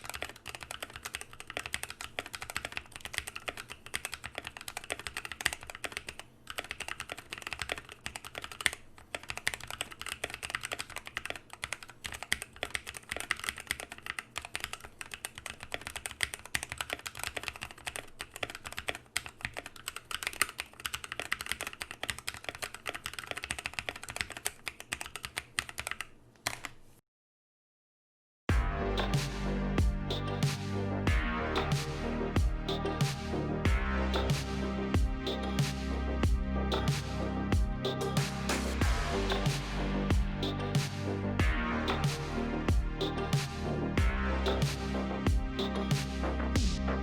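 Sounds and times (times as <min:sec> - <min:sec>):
fast mechanical keyboard typing: 0:00.0 - 0:26.8.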